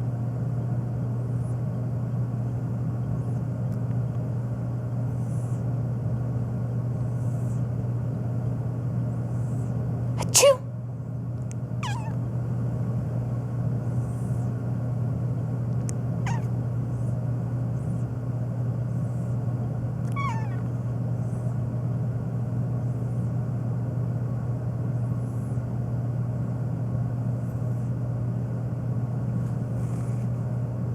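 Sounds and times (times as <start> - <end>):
steady low hum: 0.0 - 30.9
cat meowing: 11.8 - 12.2, 16.2 - 16.5, 20.1 - 20.7.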